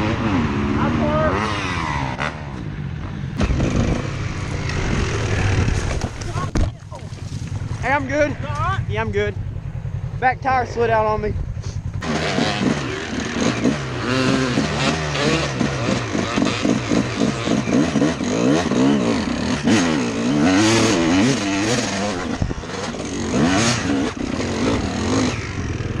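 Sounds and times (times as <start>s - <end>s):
dirt bike engine revving: 0.0s - 26.0s.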